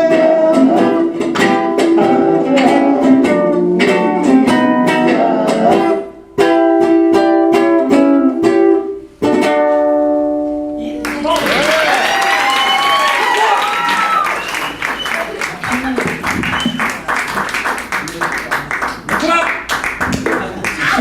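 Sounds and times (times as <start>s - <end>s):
strummed string instruments: 0.0s - 10.8s.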